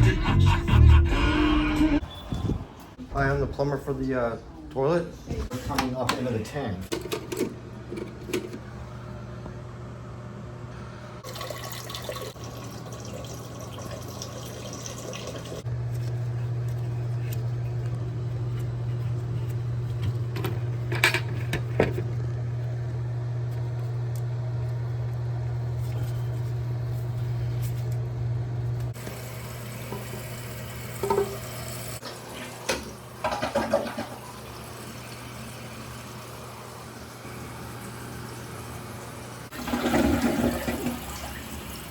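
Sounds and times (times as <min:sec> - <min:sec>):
water filling toilet tank: 0:11.2 - 0:15.7, 0:29.0 - 0:41.9.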